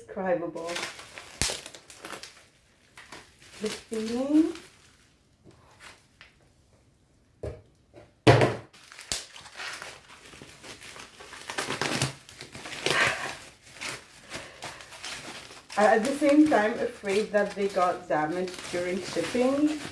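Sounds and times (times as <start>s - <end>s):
packing material crinkling: 0.6s - 6.4s, 8.7s - 19.9s
knock and thump on box: 8.2s - 8.7s.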